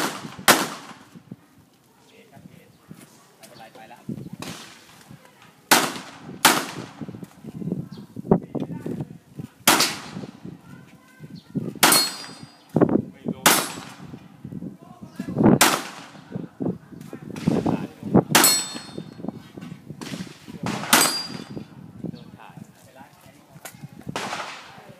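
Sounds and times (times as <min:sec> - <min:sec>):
pistol shots: 0:00.0 - 0:01.2, 0:05.7 - 0:07.1, 0:09.6 - 0:10.3, 0:11.8 - 0:12.5, 0:13.4 - 0:14.1, 0:15.6 - 0:16.2, 0:18.4 - 0:19.1, 0:20.0 - 0:21.6, 0:24.2 - 0:24.8.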